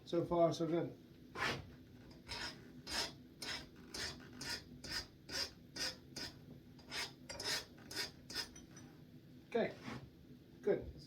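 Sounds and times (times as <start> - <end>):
file scraping a steel blade: 1.4 - 8.8.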